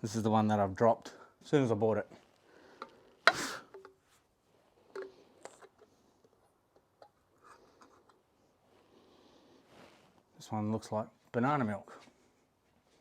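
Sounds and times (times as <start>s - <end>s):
plastic bottles clicking and tapping: 2.7s - 4.0s, 4.8s - 8.2s.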